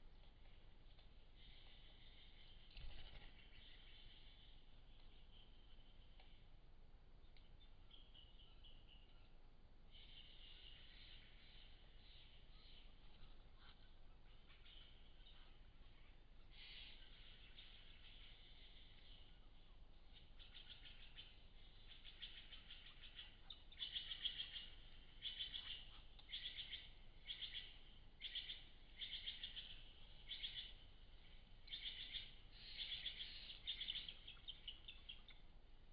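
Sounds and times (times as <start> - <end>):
high chirping trills: 20.1 - 35.5.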